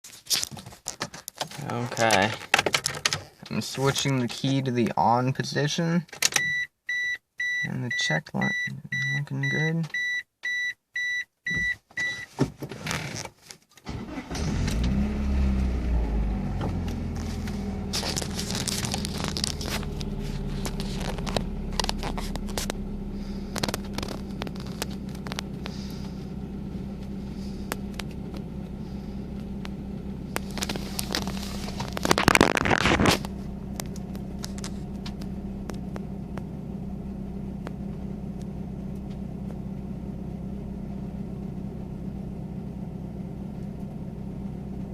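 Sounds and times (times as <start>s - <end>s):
car engine starting and idling: 13.8s - 44.9s.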